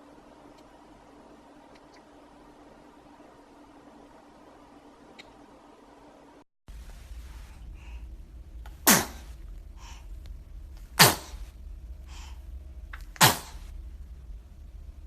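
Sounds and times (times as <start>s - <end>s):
faint baby breaths: 7.1s - 10.3s, 10.9s - 13.7s
baby sneezing: 8.7s - 9.3s, 10.9s - 11.5s, 13.0s - 13.7s.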